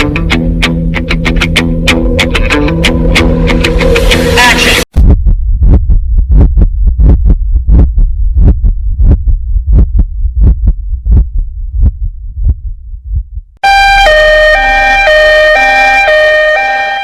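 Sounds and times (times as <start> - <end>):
heartbeat thumps: 4.9 - 13.6
two-tone ambulance siren: 13.6 - 17.0.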